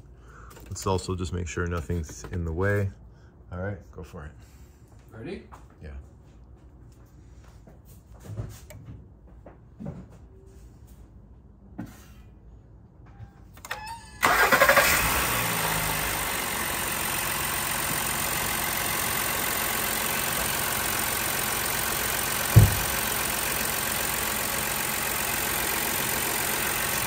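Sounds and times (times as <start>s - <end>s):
car engine starting and idling: 13.6s - 27.0s
short thump: 22.5s - 23.0s.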